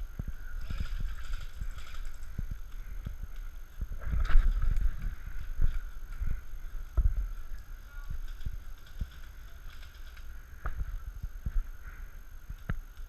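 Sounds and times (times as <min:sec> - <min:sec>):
wind on microphone: 0:00.0 - 0:13.0.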